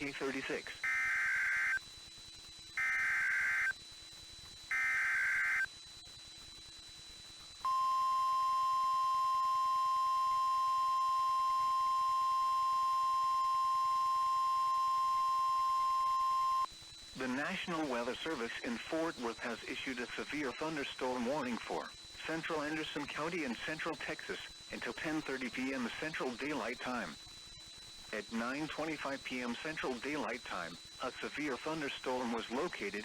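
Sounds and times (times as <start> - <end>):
steady warning alarm tone: 0.0 - 5.7, 7.6 - 16.8
harsh digital data screech: 2.8 - 3.8, 4.7 - 5.7.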